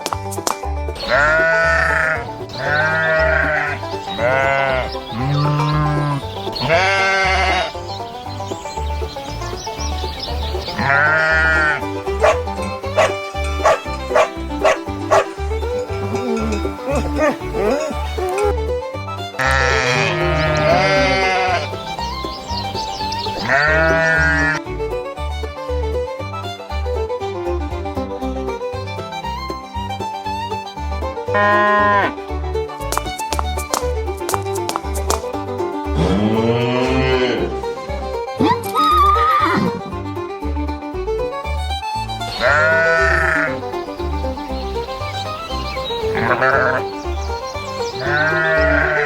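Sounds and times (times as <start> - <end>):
background music with steady beat: 0.0 - 49.0
sheep bleating: 1.0 - 8.6, 10.4 - 18.5, 19.4 - 24.6, 31.2 - 32.2, 35.9 - 37.7, 42.3 - 49.0.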